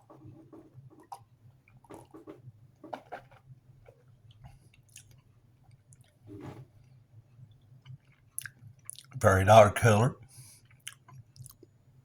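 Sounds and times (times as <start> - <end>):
man eating and drinking: 8.4 - 10.1.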